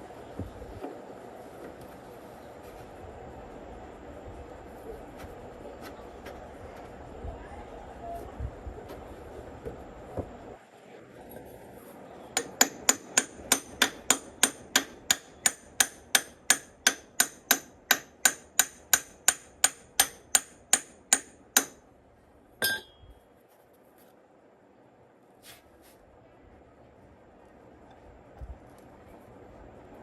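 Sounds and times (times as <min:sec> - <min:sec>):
hammer striking metal: 0:12.4 - 0:21.8, 0:22.6 - 0:23.1.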